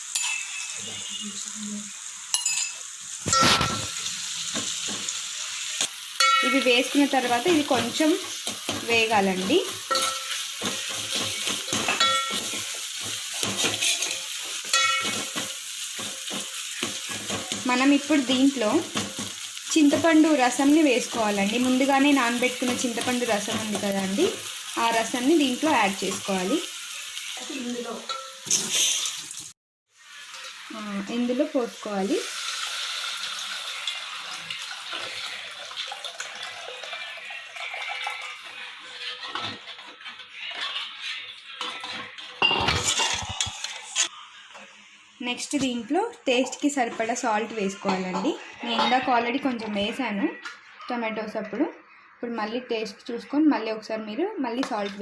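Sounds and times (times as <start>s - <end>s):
spoon stirring and scraping pan: 0.0s - 1.2s, 2.3s - 27.4s, 33.5s - 49.8s
paste sizzling in a pan: 0.0s - 48.8s
liquid splashing in hot pan: 32.2s - 39.4s
liquid being poured: 34.7s - 38.4s.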